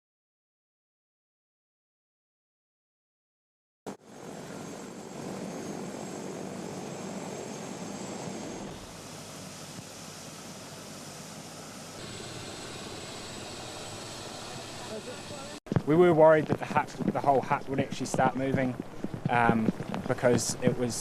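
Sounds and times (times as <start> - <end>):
faint high whine: 3.9 - 15.6
helicopter engine and rotor: 3.9 - 15.6.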